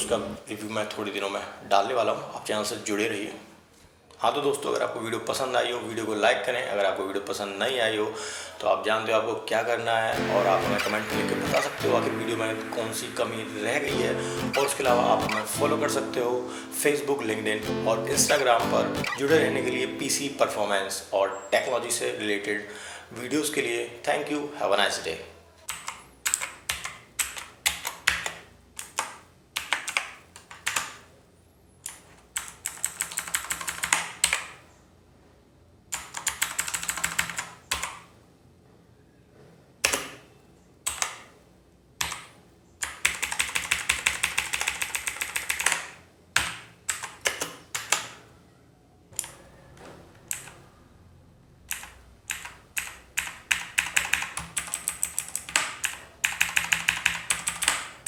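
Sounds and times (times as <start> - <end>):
clicky mechanical keyboard typing: 25.7 - 31.0, 31.9 - 34.5, 36.0 - 38.0, 42.0 - 48.2, 49.2 - 49.4, 50.3 - 50.6, 51.7 - 57.9.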